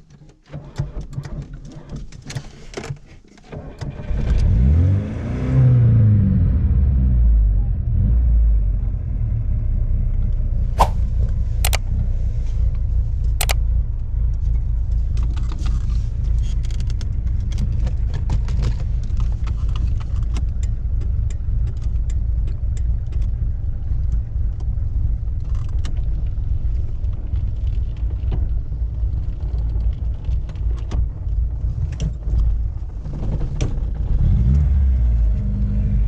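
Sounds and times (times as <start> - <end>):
sharp clicks: 10.8 - 11.0.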